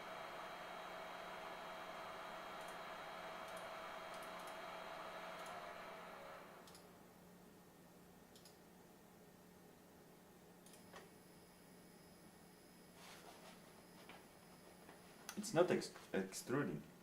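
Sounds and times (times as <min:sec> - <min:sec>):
whirring hiss winding down: 0:00.0 - 0:06.7
computer mouse clicks: 0:03.5 - 0:04.6, 0:06.6 - 0:06.9, 0:08.3 - 0:08.6.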